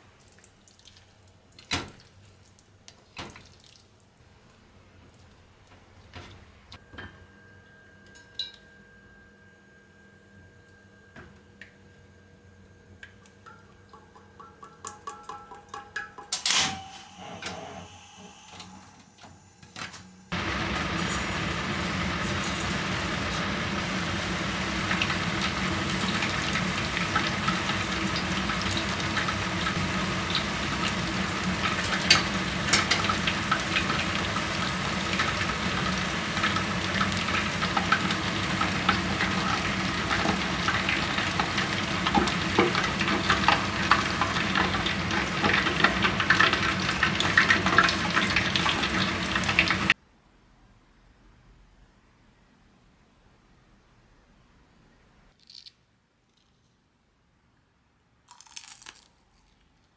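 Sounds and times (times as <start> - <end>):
food sizzling in hot oil: 20.3 - 50.0.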